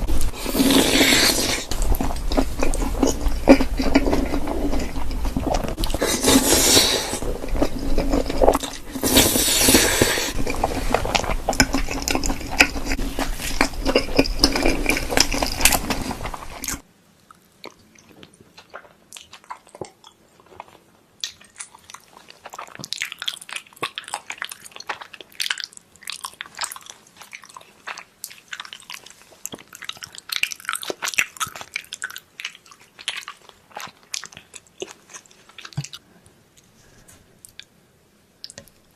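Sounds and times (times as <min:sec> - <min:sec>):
chewing: 0:00.0 - 0:36.0
mouth clicks and smacks: 0:38.4 - 0:38.9.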